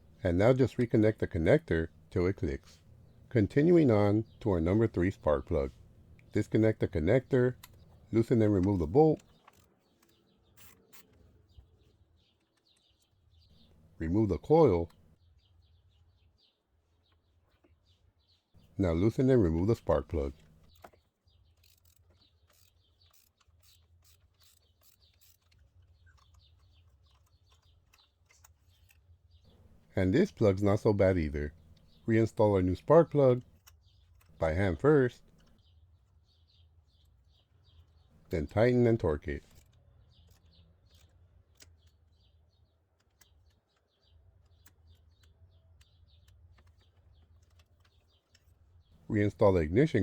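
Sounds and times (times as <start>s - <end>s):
birds chirping faintly: 0.0s - 50.0s
faint ratchet clicking: 9.2s - 11.2s, 20.4s - 29.0s.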